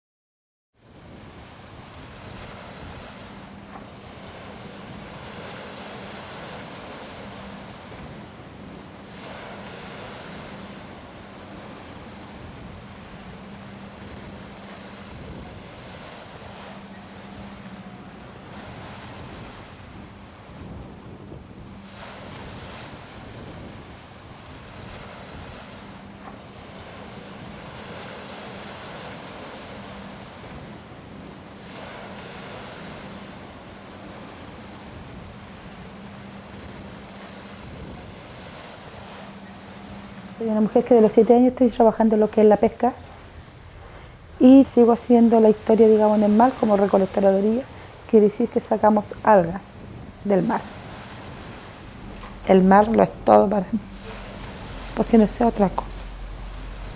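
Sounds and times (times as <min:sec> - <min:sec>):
wind buffeting microphone: 0:00.8 - 0:29.5, 0:39.8 - 0:56.9
sea surf breaking on shore: 0:00.8 - 0:56.9
steady low hum: 0:40.0 - 0:56.9.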